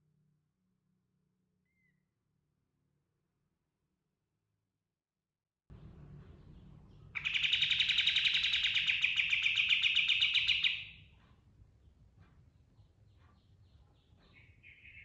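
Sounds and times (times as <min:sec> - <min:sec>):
faint bird chirps: 0:01.6 - 0:02.1, 0:06.2 - 0:11.3, 0:12.6 - 0:15.0
low steady hum: 0:05.7 - 0:10.0
bird singing rapid rolling trill: 0:05.8 - 0:11.1, 0:13.0 - 0:15.0.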